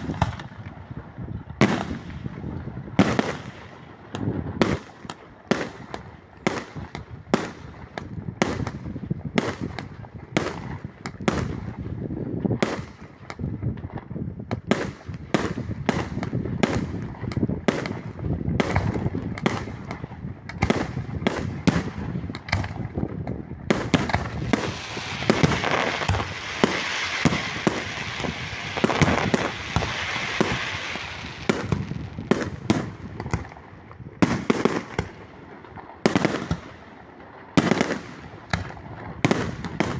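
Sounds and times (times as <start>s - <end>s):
fireworks bangs: 0.0s - 39.9s
fireworks hissing: 24.0s - 33.2s.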